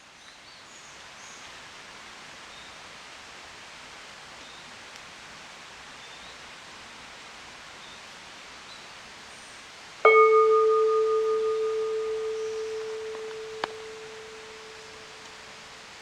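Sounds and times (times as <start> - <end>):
steady low hiss: 0.0 - 16.0
bell-like strike ringing: 10.1 - 15.3.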